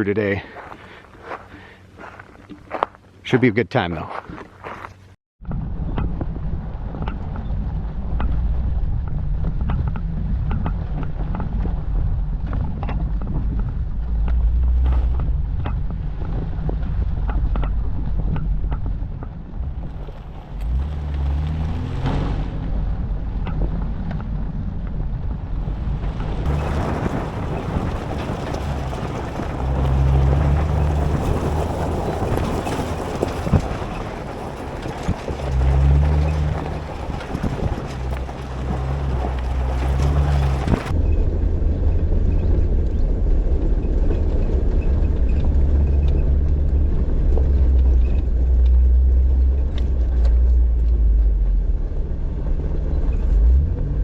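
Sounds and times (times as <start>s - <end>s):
gravel clicks and knocks: 0.0s - 54.0s
low engine drone: 5.4s - 54.0s.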